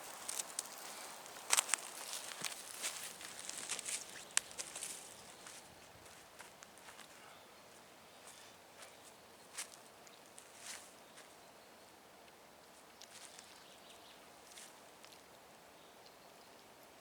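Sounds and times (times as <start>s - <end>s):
faint rustles and clicks: 0.0s - 7.3s.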